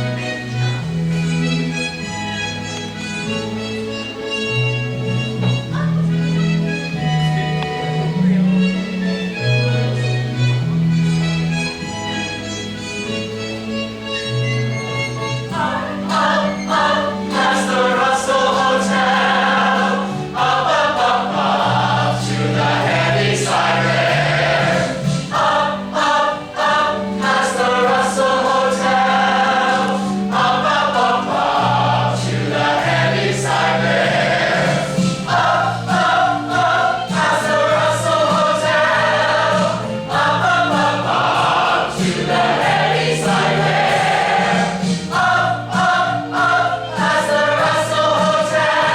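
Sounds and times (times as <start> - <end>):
instrumental accompaniment: 0.0 - 48.9
choir singing: 15.1 - 48.9.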